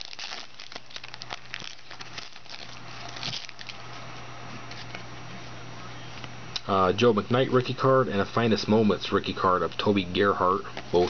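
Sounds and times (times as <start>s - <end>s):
trading cards clicking and crinkling: 0.0s - 3.9s
steady low hum: 0.0s - 11.0s.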